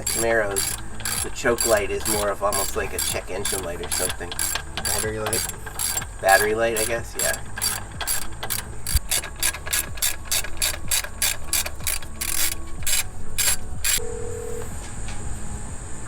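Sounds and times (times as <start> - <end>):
ratchet wrench clicking: 0.0 - 14.0.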